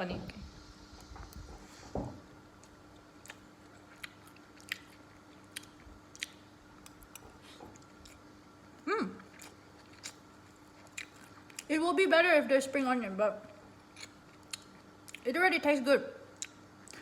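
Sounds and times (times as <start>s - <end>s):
person chewing: 2.6s - 8.3s, 9.0s - 11.7s, 13.8s - 15.2s
person humming: 8.8s - 9.2s.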